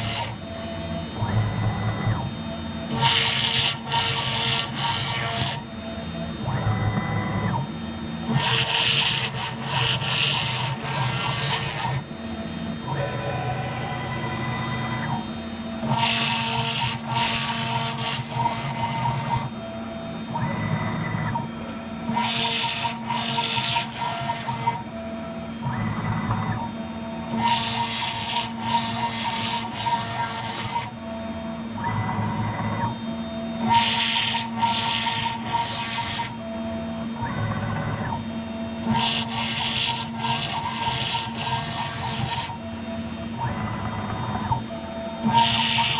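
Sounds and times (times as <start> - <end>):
machine motors humming and whining: 0.0 - 45.9
high-pitched milling cutting: 2.9 - 5.6, 8.3 - 12.0, 12.9 - 19.6, 22.0 - 24.8, 27.3 - 31.0, 33.6 - 36.4, 38.8 - 42.8, 45.2 - 45.9.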